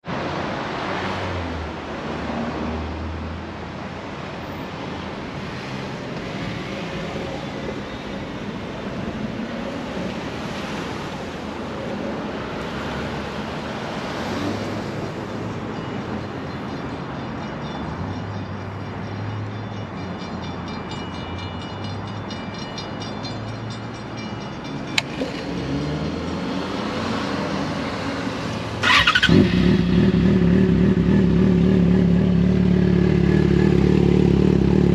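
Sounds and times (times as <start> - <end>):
motorcycle engine starting and running: 28.6 - 34.9.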